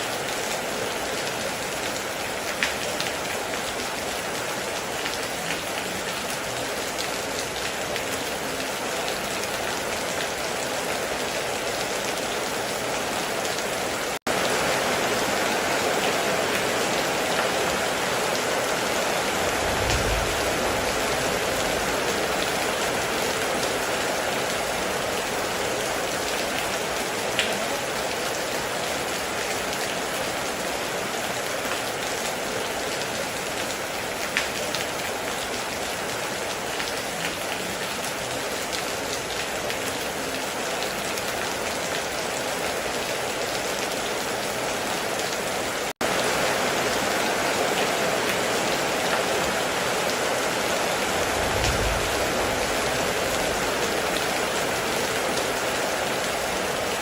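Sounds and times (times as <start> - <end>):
heavy rain on a metal roof: 0.0 - 57.0
low rumble: 19.4 - 22.3, 51.2 - 53.8.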